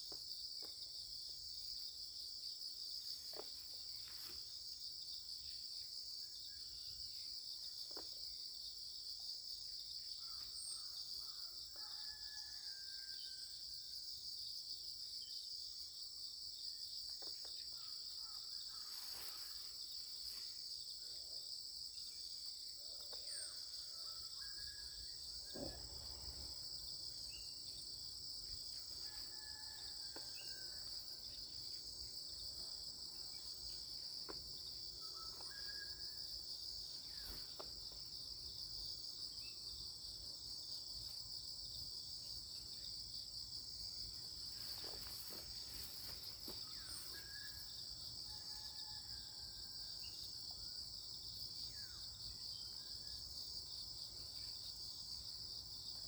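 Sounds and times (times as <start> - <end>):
insects buzzing: 16.0 - 49.0.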